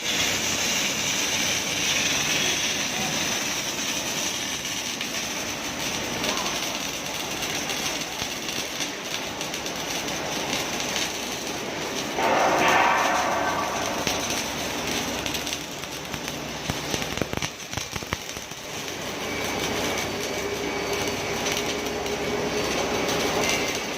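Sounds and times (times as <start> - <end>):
welding arc hissing and crackling: 0.0 - 23.9
loud hum: 12.1 - 15.8.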